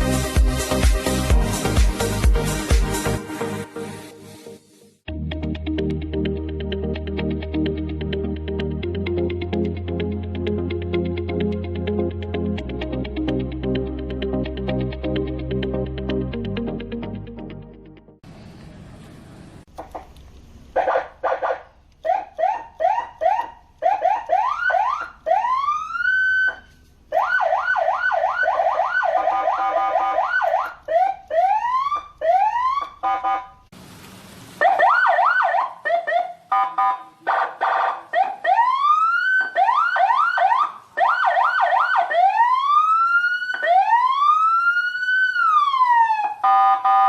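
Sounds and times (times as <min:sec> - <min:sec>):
electronic police siren: 0:20.8 - 0:33.5, 0:34.6 - 0:47.0
brief hiss: 0:33.8 - 0:34.7.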